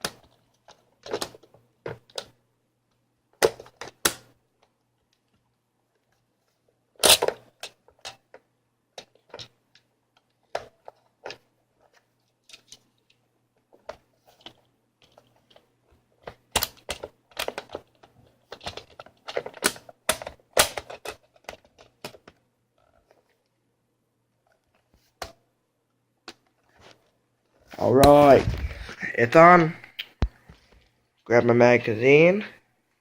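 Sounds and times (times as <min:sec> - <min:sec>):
plastic parts clicking and knocking: 0:00.0 - 0:02.4, 0:03.4 - 0:05.4, 0:07.0 - 0:23.5.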